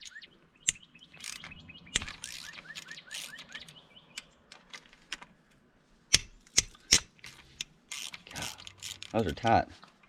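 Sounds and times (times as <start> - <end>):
bird chirping: 0.0 - 5.0
wrench clicking on bolts: 0.0 - 5.2, 6.1 - 9.2.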